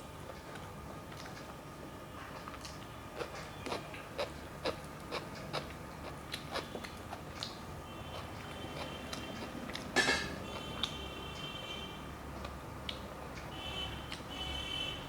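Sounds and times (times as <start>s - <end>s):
mouth smacks while chewing: 2.3s - 9.9s.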